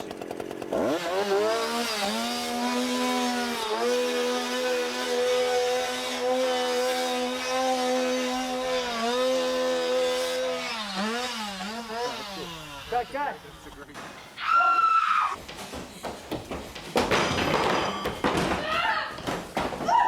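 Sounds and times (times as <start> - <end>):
chainsaw engine at high revs: 0.0 - 13.9.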